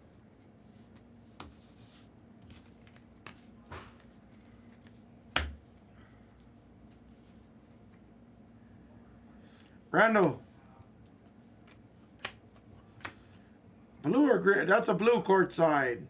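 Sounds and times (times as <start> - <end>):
faint steady hum: 0.0 - 16.0
sharp card snap: 5.4 - 5.6.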